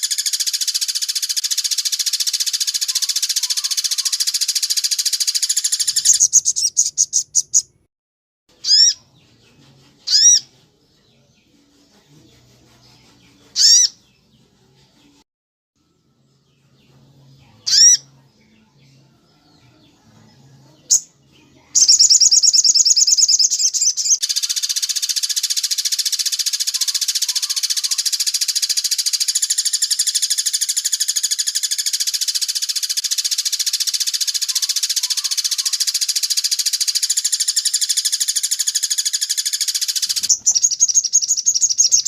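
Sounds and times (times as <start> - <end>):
bird trill and harsh rattle: 0.0 - 7.8, 8.6 - 10.6, 12.8 - 14.1, 21.8 - 42.0.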